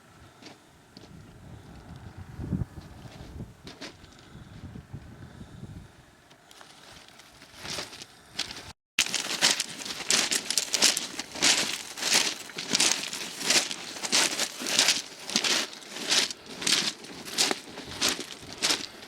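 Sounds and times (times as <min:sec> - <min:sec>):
footsteps crunching on rough path: 0:06.5 - 0:19.0.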